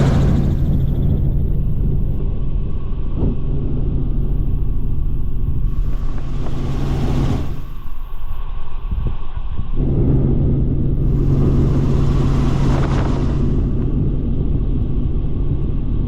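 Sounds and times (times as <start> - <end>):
helicopter engine and rotor drone: 0.0 - 8.0.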